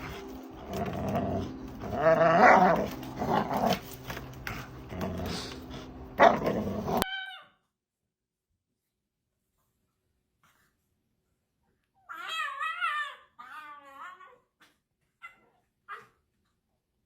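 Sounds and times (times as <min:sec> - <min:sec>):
dog growling: 0:00.0 - 0:07.1.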